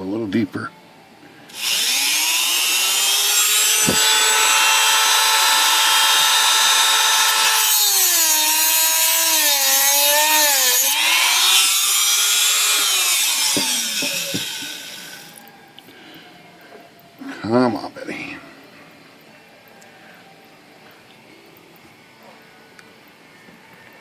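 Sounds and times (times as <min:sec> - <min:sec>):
rotary tool grinding with whine: 0:01.5 - 0:15.4.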